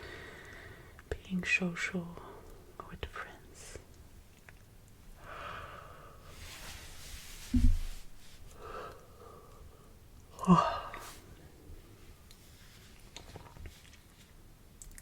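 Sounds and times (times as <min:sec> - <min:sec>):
woman yawning and sighing: 0:10.4 - 0:11.1.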